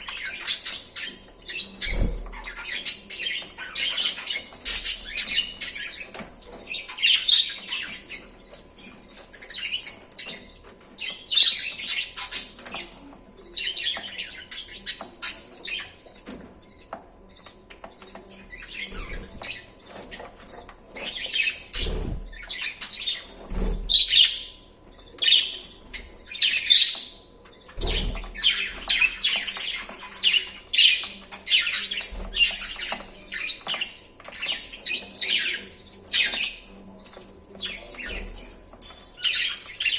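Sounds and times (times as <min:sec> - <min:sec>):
budgerigars chirping and squawking: 0:00.0 - 0:39.9.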